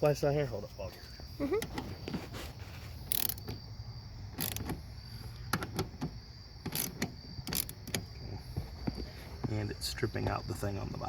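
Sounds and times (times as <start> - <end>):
wrench clicking and scraping on bolt: 3.0 - 3.6, 4.3 - 4.8, 5.4 - 8.2.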